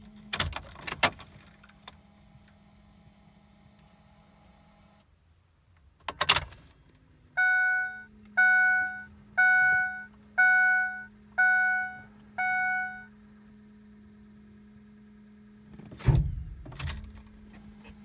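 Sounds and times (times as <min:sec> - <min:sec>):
dashboard warning chime dinging: 0:07.4 - 0:13.1
steady low hum: 0:10.8 - 0:18.0
sharp clunk: 0:15.8 - 0:17.3.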